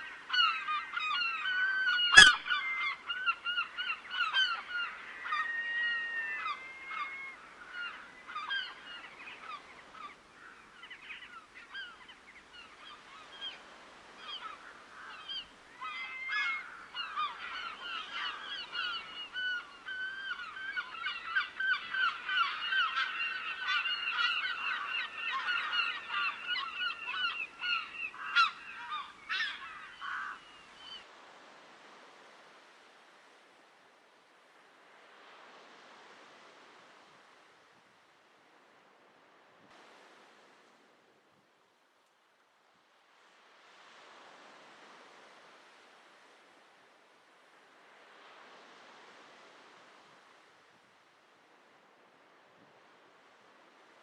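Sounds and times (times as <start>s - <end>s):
waterbirds honking: 0.3s - 9.0s, 14.2s - 31.0s.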